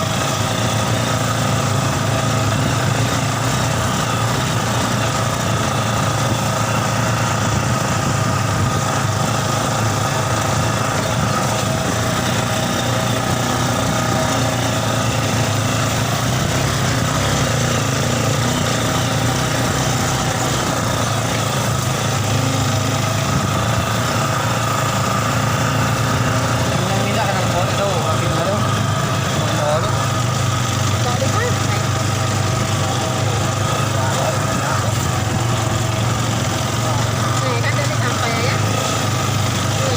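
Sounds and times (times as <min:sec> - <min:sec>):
motorcycle engine running steadily: 0:00.0 - 0:39.9.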